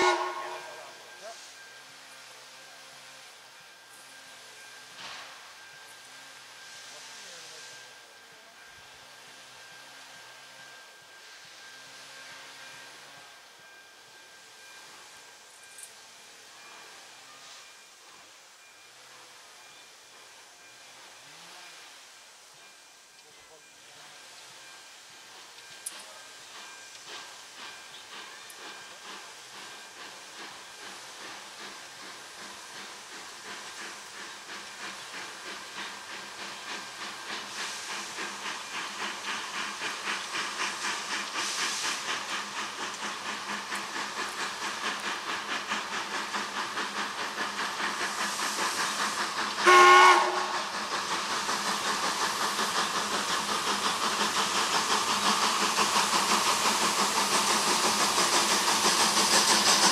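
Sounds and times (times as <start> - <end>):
steam whistle blast: 0.0 - 1.3, 49.6 - 50.7
steam locomotive exhaust beats: 0.0 - 59.9.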